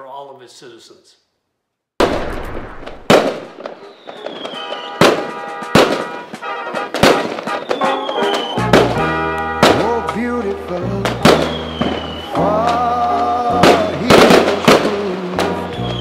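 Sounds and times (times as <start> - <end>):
fireworks booming: 2.0 - 16.0
fireworks crackling: 2.0 - 16.0
falling whistle: 3.7 - 5.1, 7.5 - 8.7, 11.4 - 12.5, 15.7 - 16.0
music: 3.8 - 16.0.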